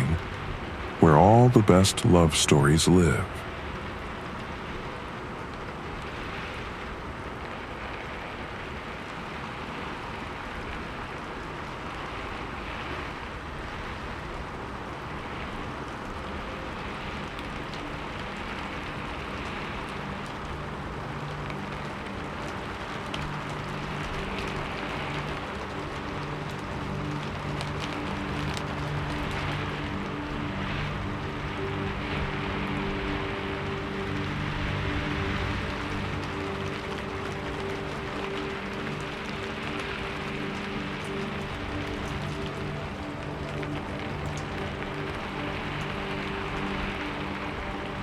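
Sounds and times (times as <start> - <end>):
rain pattering: 0.0 - 48.0
soft background music: 0.0 - 48.0.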